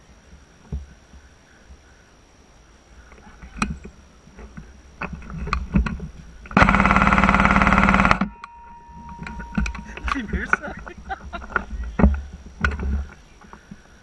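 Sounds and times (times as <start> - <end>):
scattered clicks and knocks: 3.5 - 13.8
airsoft gun full-auto burst: 6.6 - 8.4.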